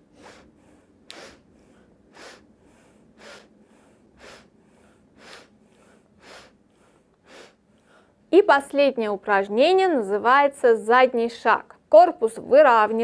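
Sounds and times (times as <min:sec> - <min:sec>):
sharp nasal sniffing inhales: 0:00.1 - 0:00.5, 0:01.1 - 0:01.5, 0:02.1 - 0:08.0.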